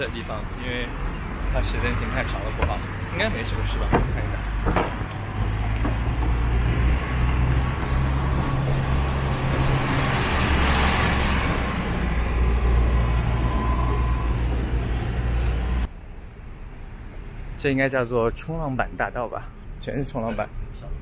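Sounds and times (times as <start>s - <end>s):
road traffic rumble: 0.0s - 21.0s
vehicle passing: 1.2s - 15.9s.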